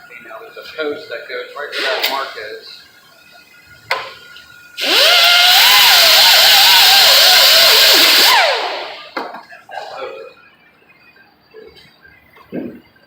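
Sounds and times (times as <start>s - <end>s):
power grinder whining on sheet metal: 4.8s - 9.2s.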